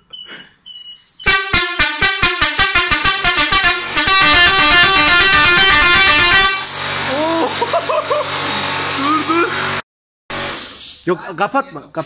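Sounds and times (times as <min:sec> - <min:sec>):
musical air horn tune: 0:01.2 - 0:07.1.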